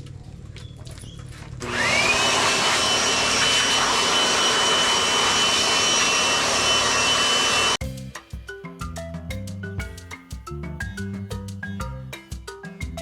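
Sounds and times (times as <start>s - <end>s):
electric blower motor whine: 1.6s - 7.8s.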